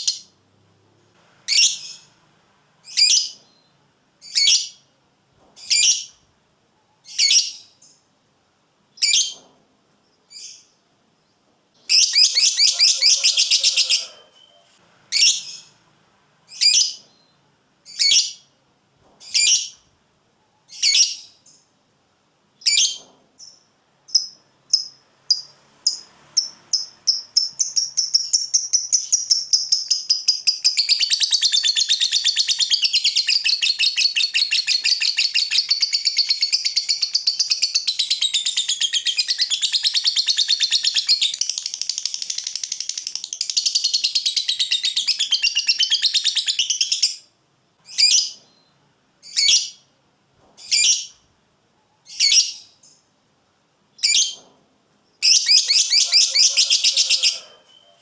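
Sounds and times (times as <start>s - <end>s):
lovebird chattering trill: 11.9s - 15.7s, 24.1s - 47.2s, 55.2s - 58.0s.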